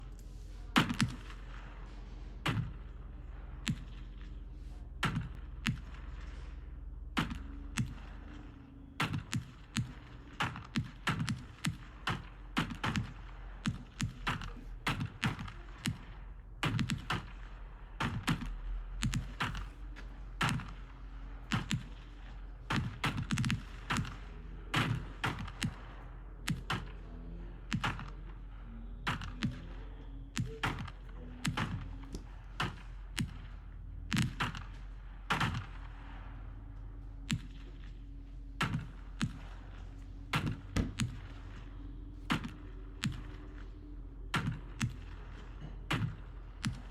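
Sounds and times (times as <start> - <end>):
fireworks pops and bangs: 0.0 - 27.0.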